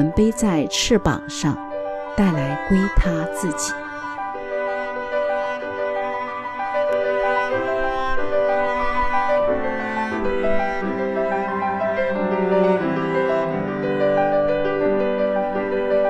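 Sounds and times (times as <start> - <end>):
bowed string notes: 0.0 - 16.0
piano: 0.0 - 16.0.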